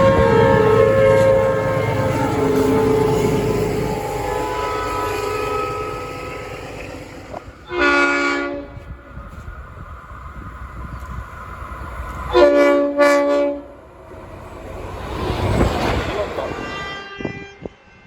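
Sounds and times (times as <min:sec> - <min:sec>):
train horn blasts: 0:00.0 - 0:09.0, 0:12.3 - 0:13.8, 0:16.5 - 0:18.0
low train rumble: 0:00.0 - 0:18.0.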